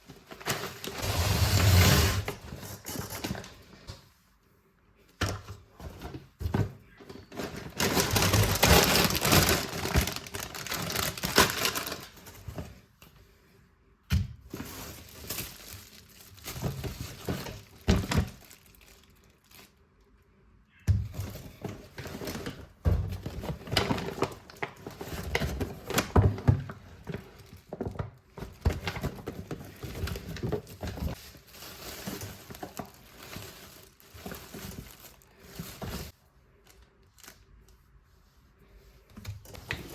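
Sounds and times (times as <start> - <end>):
packaging crinkling: 7.5 - 12.4, 14.8 - 19.8.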